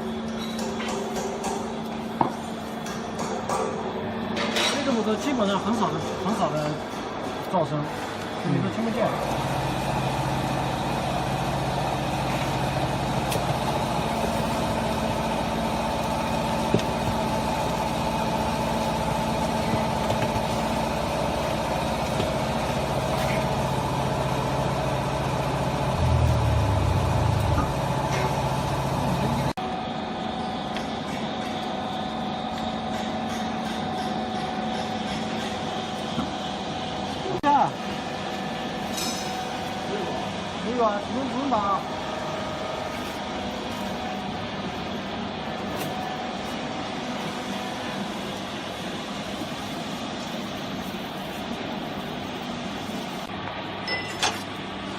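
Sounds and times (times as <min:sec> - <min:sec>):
baler motor humming: 0:09.3 - 0:29.5
heavy low drone: 0:25.8 - 0:28.3.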